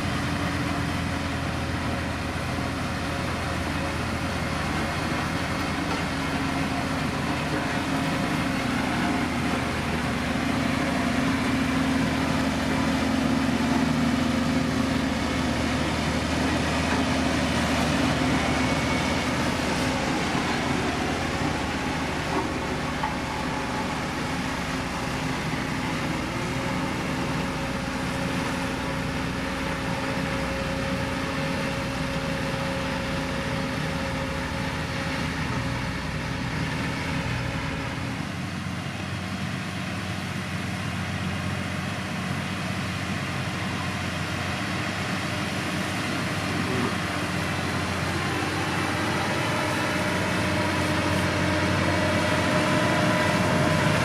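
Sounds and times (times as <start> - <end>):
heavy machinery engine humming: 0.0 - 54.0.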